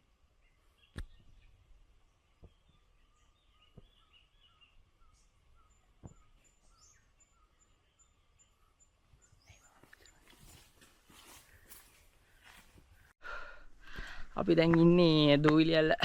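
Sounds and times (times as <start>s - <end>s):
bird chirps: 0.4s - 12.1s.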